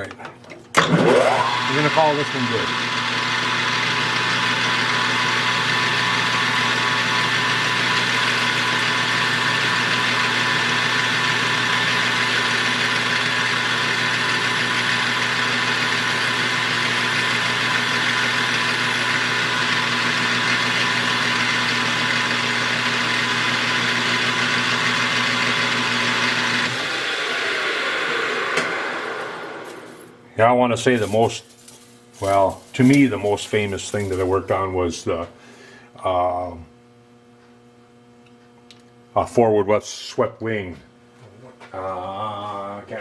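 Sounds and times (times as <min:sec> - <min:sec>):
lathe spindle winding down: 0:00.8 - 0:30.2
metal lathe running: 0:00.8 - 0:30.2.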